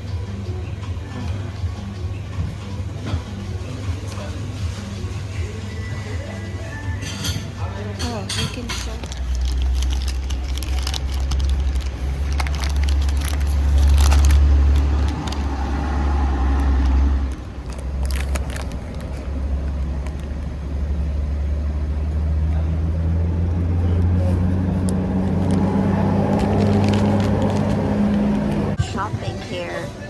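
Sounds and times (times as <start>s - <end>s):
motor vehicle engine rumble: 8.5s - 29.3s.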